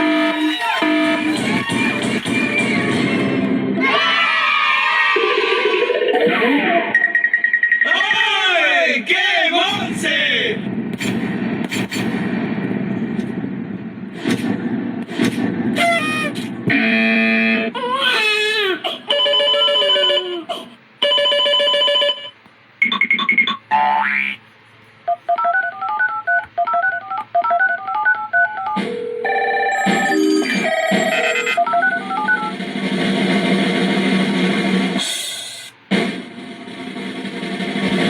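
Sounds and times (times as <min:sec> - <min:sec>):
beeps: 0:06.1 - 0:08.0, 0:22.8 - 0:24.0, 0:25.1 - 0:29.0, 0:29.7 - 0:32.6
warbling phone-like ring: 0:06.9 - 0:08.0
bending cartoon-like tone: 0:15.8 - 0:16.5.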